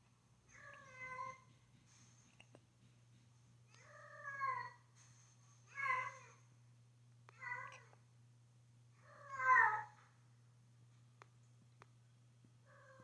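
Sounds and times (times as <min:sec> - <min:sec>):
cat meowing: 0:09.1 - 0:09.9.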